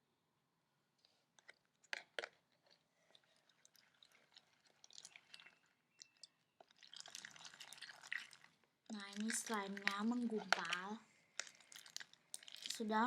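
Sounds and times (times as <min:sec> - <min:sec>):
slime squelching while stirred: 0:01.0 - 0:13.0.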